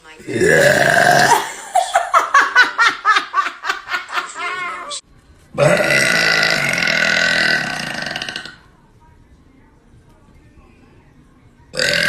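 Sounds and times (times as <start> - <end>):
girl burping: 0.2 - 1.6, 5.6 - 8.6, 11.8 - 12.0
laughter in bursts: 1.3 - 4.7.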